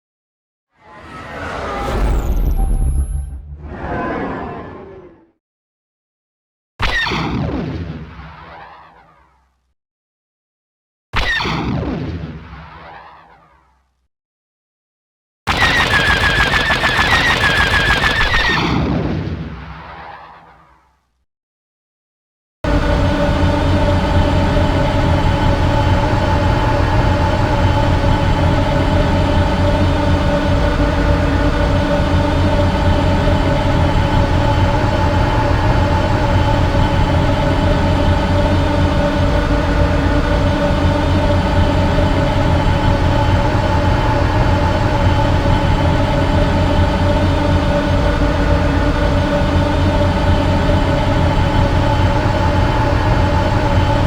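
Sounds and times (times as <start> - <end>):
spacecraft engine drone: 0.8 - 5.4, 15.5 - 18.7, 22.7 - 54.0.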